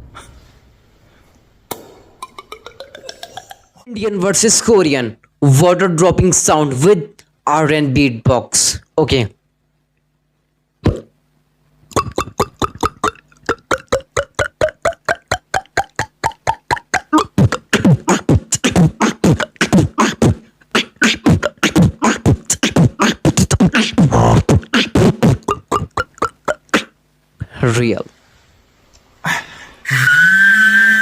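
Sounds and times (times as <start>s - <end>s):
beatboxed water-drop plops: 1.7s - 3.7s, 10.8s - 11.1s, 11.9s - 27.0s.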